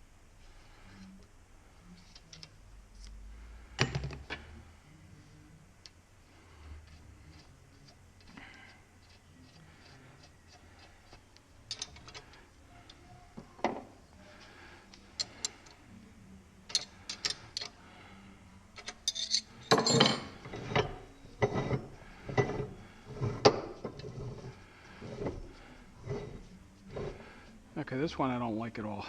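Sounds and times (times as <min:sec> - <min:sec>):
small metal parts clinking: 0:11.7 - 0:12.3, 0:16.7 - 0:17.7, 0:18.8 - 0:21.0.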